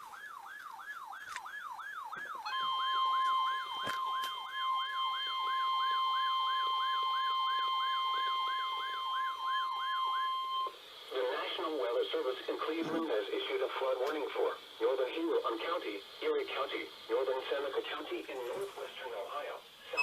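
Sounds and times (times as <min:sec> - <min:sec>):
siren falling electronic sweep: 0:00.1 - 0:10.7
single-pitch warning alarm tone: 0:02.2 - 0:10.8.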